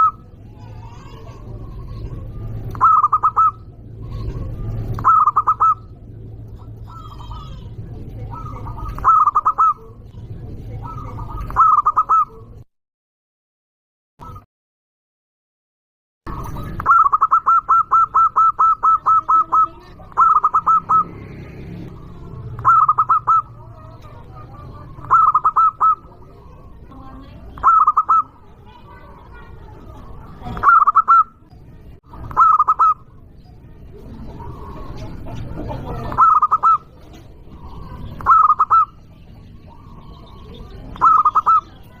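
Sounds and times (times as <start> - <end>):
dove cooing: 0.0 - 12.6, 16.3 - 42.0.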